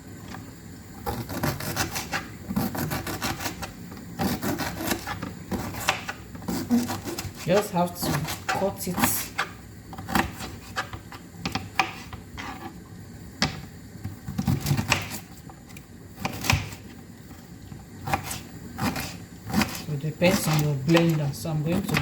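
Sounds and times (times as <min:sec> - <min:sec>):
knife cutting ginger on board: 0:01.1 - 0:12.7, 0:14.4 - 0:15.3, 0:16.2 - 0:16.8, 0:18.0 - 0:22.0.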